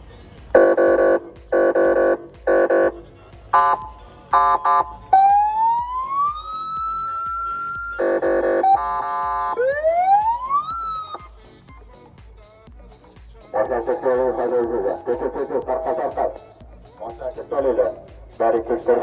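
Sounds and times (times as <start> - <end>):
siren horn blasts: 0.5 - 11.2
siren wail: 3.6 - 11.2
siren chirps: 3.6 - 11.3.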